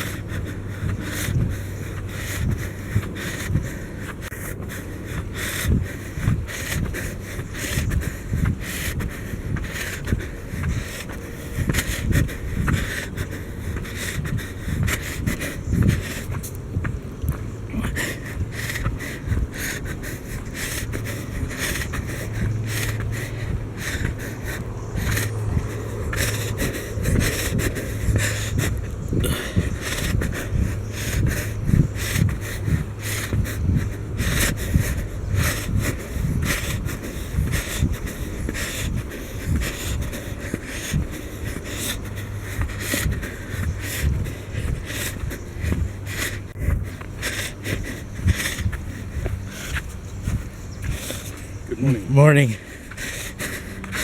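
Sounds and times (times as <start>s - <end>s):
footsteps on a trail: 0.0s - 54.0s
low steady rumble: 0.0s - 54.0s
person breathing hard: 0.0s - 54.0s.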